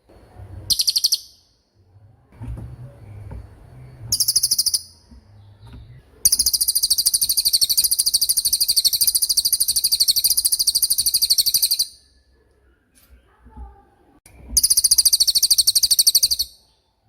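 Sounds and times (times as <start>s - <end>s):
bird trilling: 0.7s - 1.6s, 4.1s - 5.1s, 6.2s - 12.1s, 14.6s - 16.7s.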